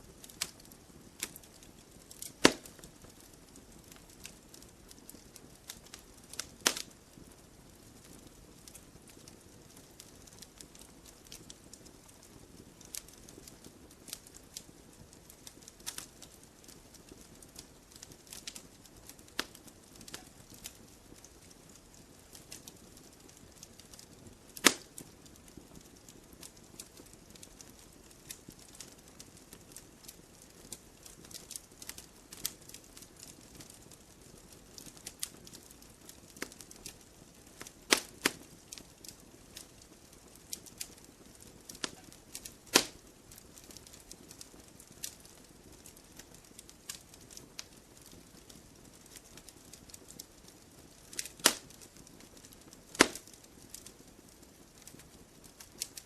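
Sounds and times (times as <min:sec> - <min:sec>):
campfire logs snapping and popping: 0:00.1 - 0:07.3, 0:08.0 - 0:56.0
fire hissing: 0:01.2 - 0:03.3, 0:24.6 - 0:24.8, 0:37.6 - 0:38.4, 0:41.7 - 0:43.9, 0:52.4 - 0:53.8.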